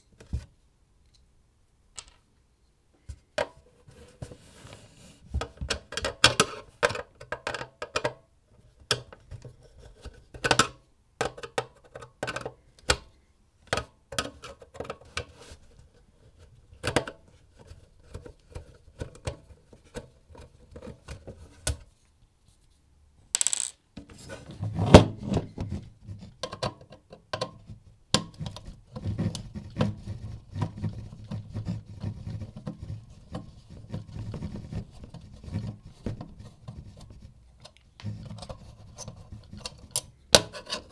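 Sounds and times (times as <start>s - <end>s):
rubbing and shuffling handling noise: 3.0s - 5.7s, 14.5s - 24.7s, 28.6s - 39.9s.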